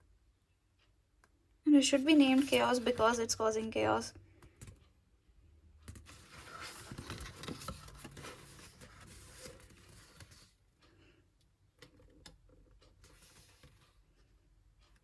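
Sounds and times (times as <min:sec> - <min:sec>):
packaging rustling and crinkling: 0:06.1 - 0:10.5.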